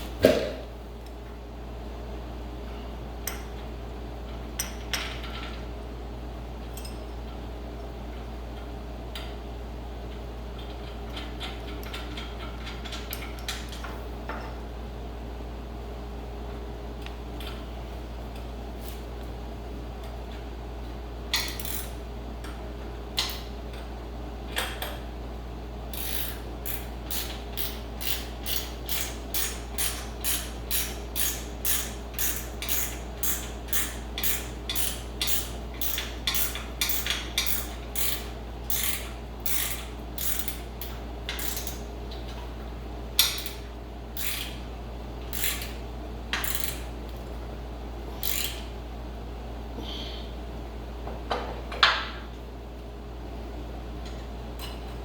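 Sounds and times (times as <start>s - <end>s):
ratchet wrench clicking: 21.3s - 21.9s, 25.9s - 41.8s, 44.2s - 44.6s, 45.3s - 45.8s, 46.4s - 46.8s, 48.2s - 48.7s.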